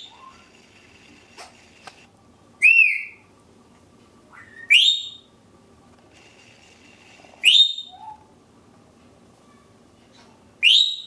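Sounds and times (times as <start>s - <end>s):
parrot whistling high: 2.6s - 3.2s, 4.3s - 5.3s, 7.4s - 8.2s, 10.6s - 11.0s.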